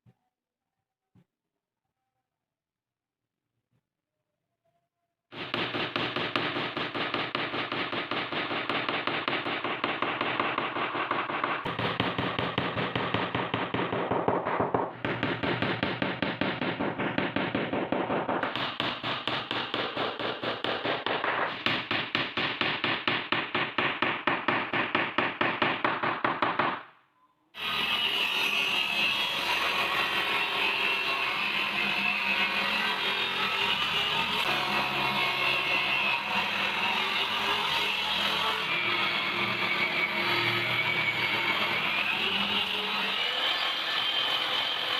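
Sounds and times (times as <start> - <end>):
hammering on wood: 5.4 - 26.9.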